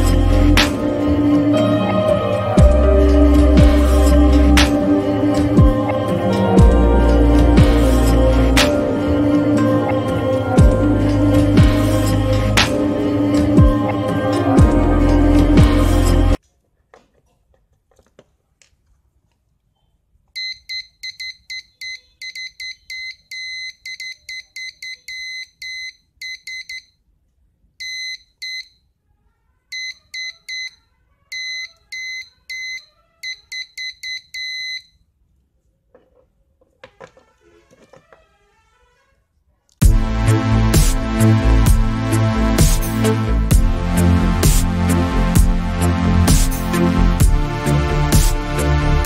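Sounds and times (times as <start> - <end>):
morse code beeps: 29.8 - 35.0.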